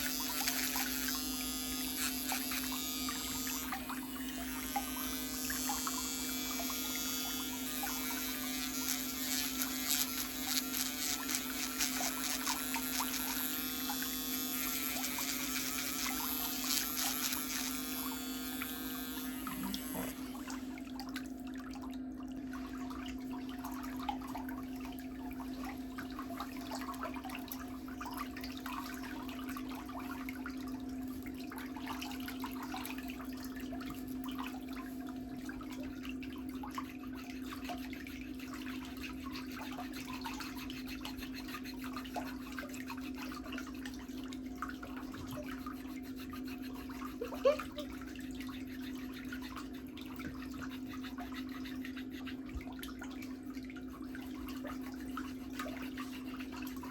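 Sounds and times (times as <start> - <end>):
drill scraping against nail: 0.0 - 20.7
electric nail drill running: 0.0 - 20.8.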